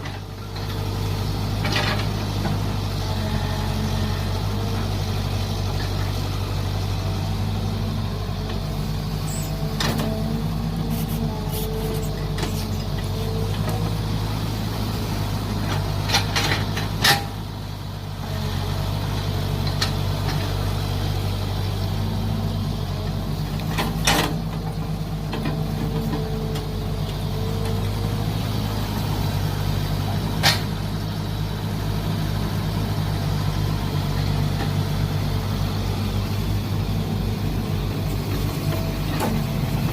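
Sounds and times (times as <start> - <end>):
excavator engine running: 0.0 - 39.9
hydraulics shifting in pitch: 8.8 - 13.2.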